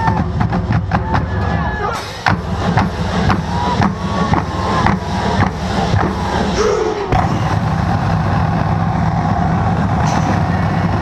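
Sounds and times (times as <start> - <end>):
drumline hits: 0.0 - 11.0
steady low rumble: 2.0 - 11.0.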